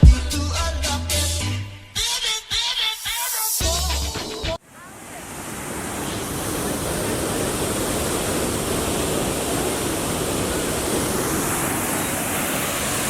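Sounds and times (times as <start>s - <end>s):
waterfall rushing: 4.9s - 13.0s.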